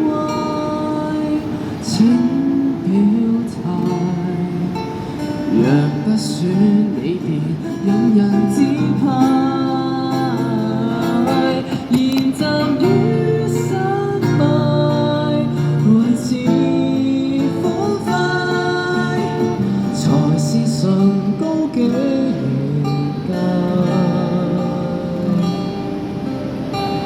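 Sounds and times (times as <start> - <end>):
strummed acoustic guitar: 0.0 - 27.0
person singing: 5.5 - 25.9.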